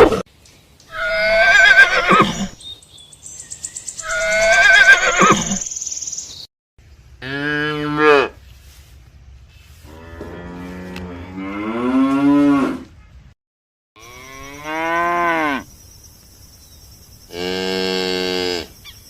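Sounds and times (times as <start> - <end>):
high-pitched wavering animal calls: 3.9 - 5.6.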